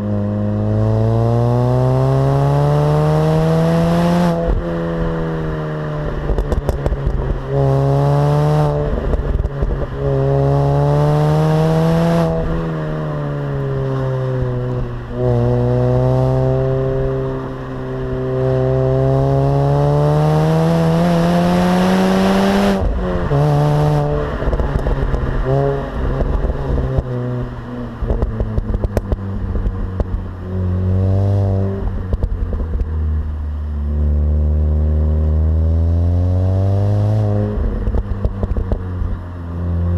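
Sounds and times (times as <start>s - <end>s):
supercharged car engine revving: 0.0s - 29.4s.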